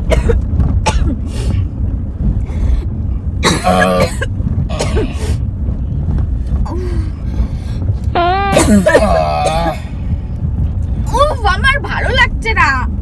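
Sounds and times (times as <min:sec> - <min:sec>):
car cabin road noise: 0:00.0 - 0:13.0
person coughing: 0:03.4 - 0:05.3, 0:08.5 - 0:09.9.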